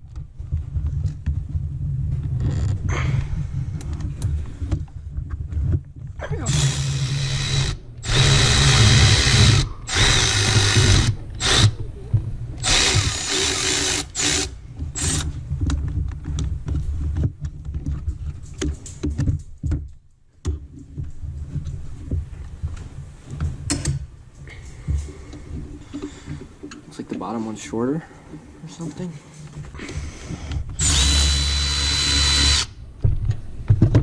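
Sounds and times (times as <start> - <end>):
power ratchet bursts: 6.5 - 11.8, 12.6 - 15.3, 30.8 - 32.8.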